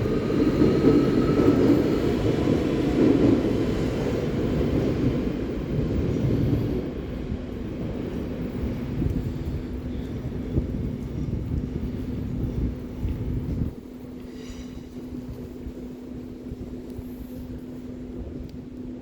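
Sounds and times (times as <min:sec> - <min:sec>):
passenger train rumbling: 0:00.0 - 0:19.0.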